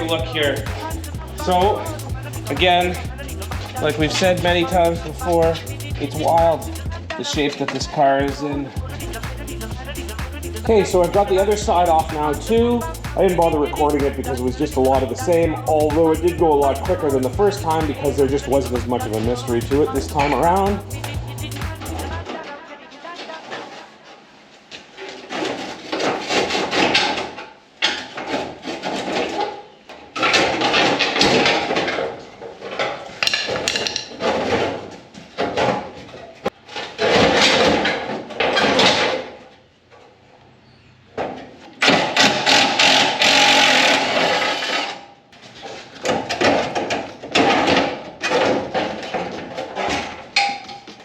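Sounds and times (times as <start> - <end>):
metal scraping: 0.0 - 7.1.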